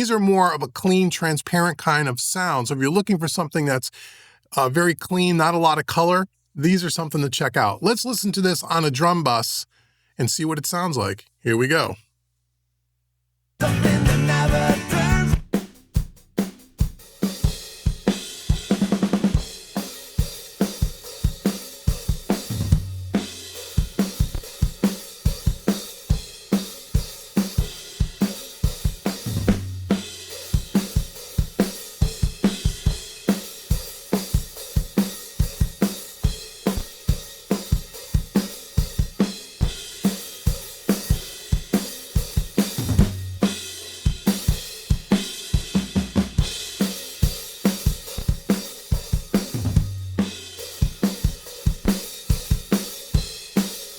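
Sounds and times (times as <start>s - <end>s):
drum kit playing a groove: 13.6s - 53.9s.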